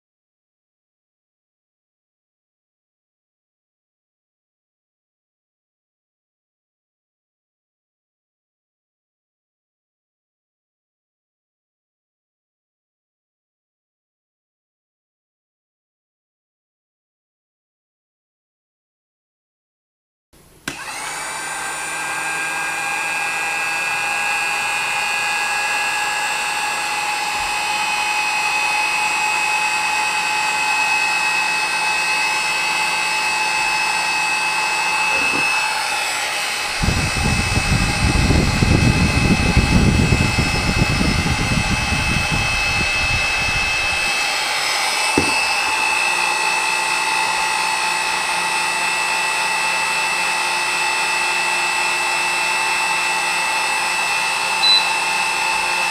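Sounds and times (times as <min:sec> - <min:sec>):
heat gun fan whine: 0:20.4 - 0:55.9
click: 0:20.6 - 0:20.8.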